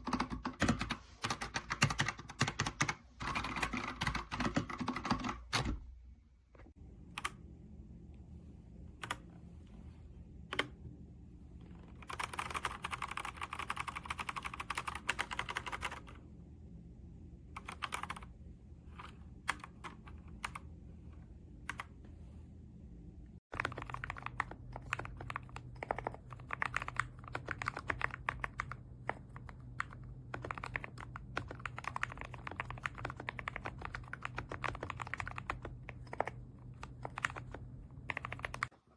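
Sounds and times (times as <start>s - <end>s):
mechanical keyboard typing: 0.0s - 5.8s, 9.0s - 9.2s, 10.5s - 10.8s, 11.7s - 16.2s, 17.5s - 18.3s, 19.0s - 20.7s, 23.5s - 38.7s.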